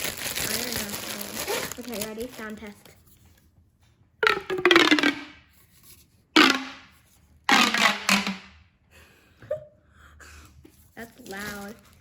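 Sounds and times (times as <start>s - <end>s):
plastic fidget toy pulled and pushed: 4.2s - 5.3s, 6.4s - 6.9s, 7.5s - 8.5s.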